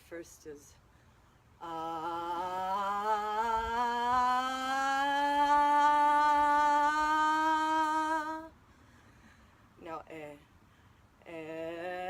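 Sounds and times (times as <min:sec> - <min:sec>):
woman singing long ah vowel: 0:01.6 - 0:08.5, 0:11.2 - 0:12.0.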